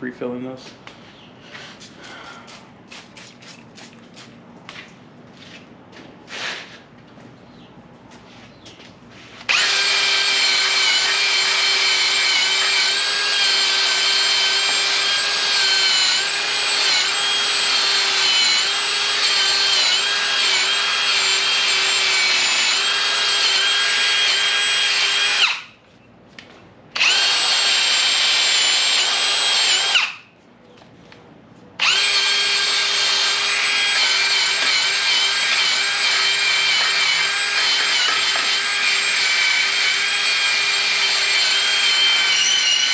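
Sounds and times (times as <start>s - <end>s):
drill wire brush whining on metal: 9.4s - 25.7s, 27.0s - 30.3s, 31.8s - 42.9s.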